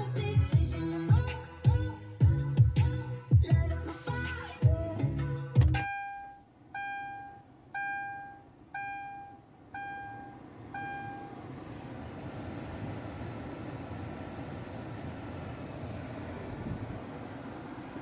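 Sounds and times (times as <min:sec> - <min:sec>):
music: 0:00.0 - 0:05.8
car warning chime dings: 0:05.8 - 0:11.4.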